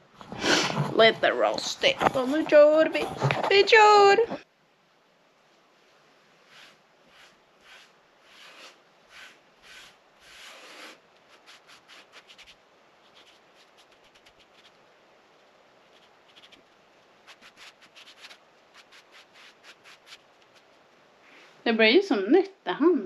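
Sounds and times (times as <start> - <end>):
scrubbing strokes on cast iron: 6.4 - 14.8, 15.8 - 21.0.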